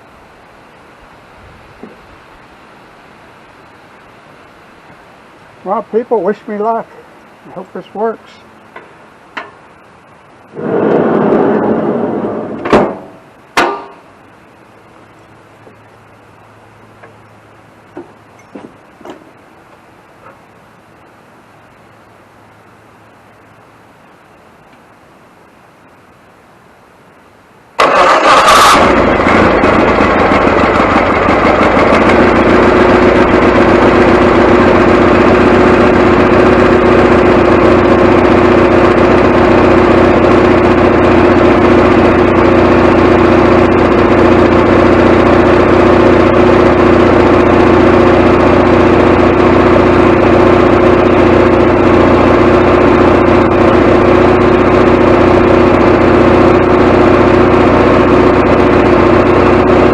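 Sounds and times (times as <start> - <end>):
engine starting and running: 10.4 - 14.0, 27.8 - 59.9.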